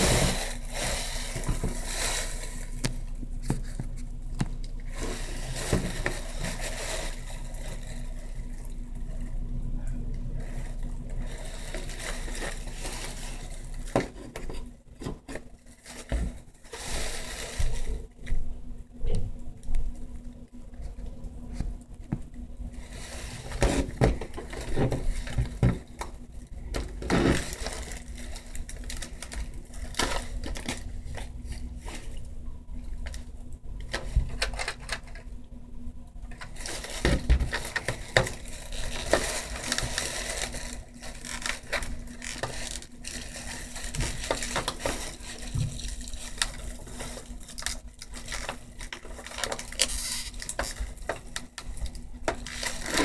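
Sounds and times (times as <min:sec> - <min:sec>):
faint steady hum: 0:00.0 - 0:53.0
rustling: 0:04.8 - 0:09.2, 0:10.4 - 0:18.3, 0:26.8 - 0:32.3, 0:36.3 - 0:53.0.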